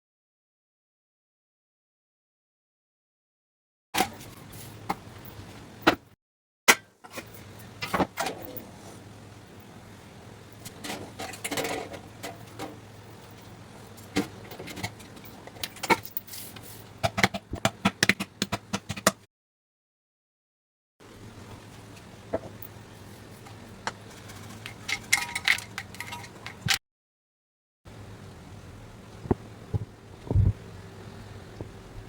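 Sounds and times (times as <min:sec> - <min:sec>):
knocks and clicks of handled objects: 0:10.6 - 0:19.2, 0:23.4 - 0:26.8
steady low hum: 0:27.9 - 0:32.0.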